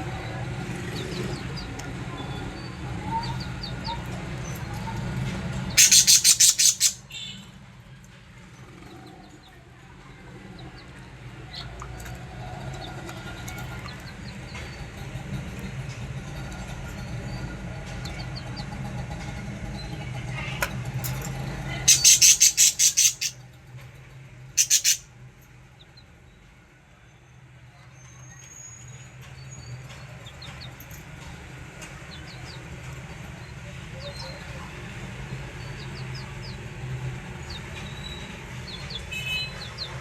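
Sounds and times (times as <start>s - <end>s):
budgerigars chirping: 5.8s - 7.0s, 21.8s - 23.4s, 24.6s - 25.0s
rapid sharp bird calls: 5.8s - 7.2s, 21.8s - 23.4s, 24.6s - 25.1s.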